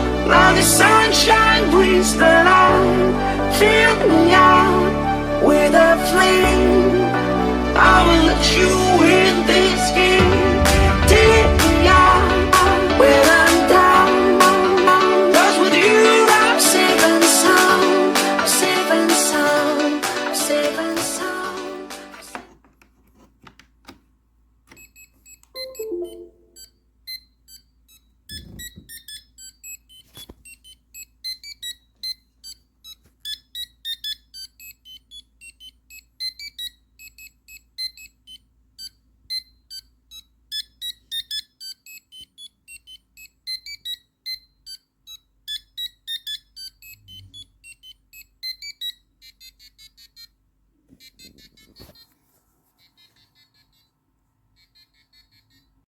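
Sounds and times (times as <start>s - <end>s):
electronic buzzer ringtone melody: 25.6s - 26.8s.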